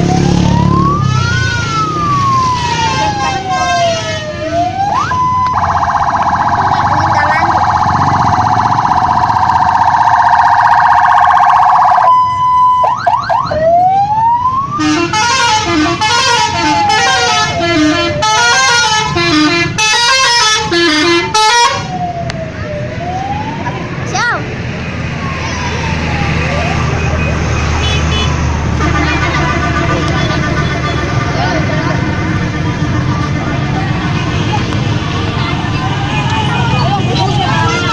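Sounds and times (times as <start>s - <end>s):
siren wailing: 0.0s - 19.0s, 19.9s - 24.2s, 25.2s - 27.5s
multi-tone musical horn: 14.8s - 21.8s.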